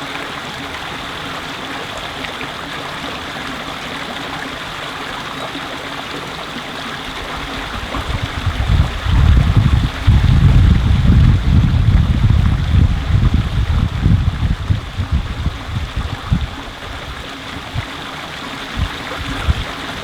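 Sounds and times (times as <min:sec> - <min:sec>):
stream rushing: 0:00.0 - 0:20.0
wind buffeting microphone: 0:07.1 - 0:20.0.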